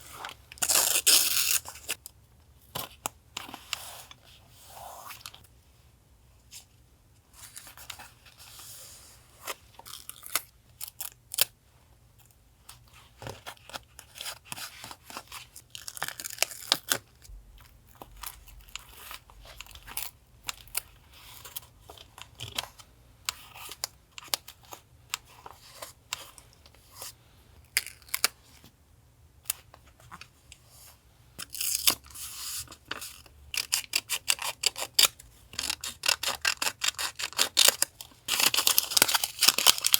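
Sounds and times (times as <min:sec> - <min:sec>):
scissors snipping paper: 0:33.5 - 0:39.9.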